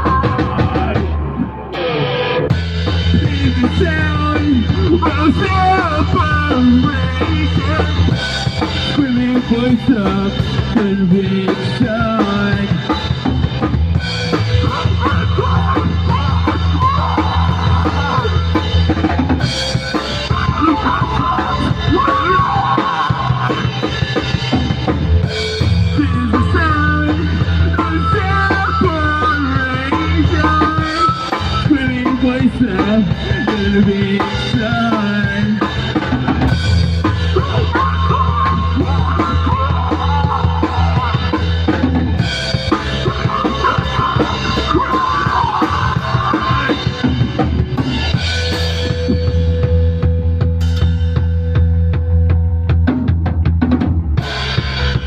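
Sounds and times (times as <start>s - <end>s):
lead guitar solo: 0.0s - 3.0s
bass guitar: 0.0s - 55.0s
drum kit: 0.0s - 55.0s.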